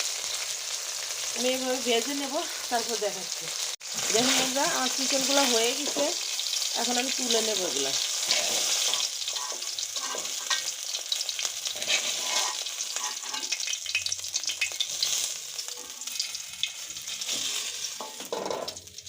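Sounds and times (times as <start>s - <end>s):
chicken sizzling in hot oil: 0.0s - 19.0s
utensil scraping pan: 8.2s - 10.6s, 11.7s - 13.6s, 15.8s - 18.7s.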